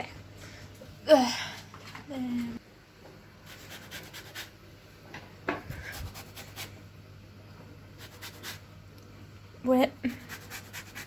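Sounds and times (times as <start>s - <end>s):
peel rasping on a grater: 10.1s - 11.0s.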